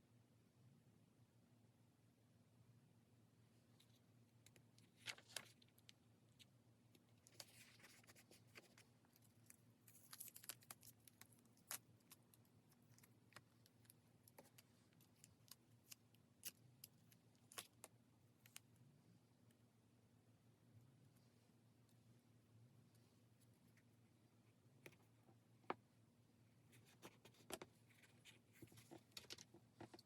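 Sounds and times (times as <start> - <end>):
faint low hum: 0.0 - 30.0
scratchy paper rustles: 4.8 - 5.8, 7.2 - 16.0.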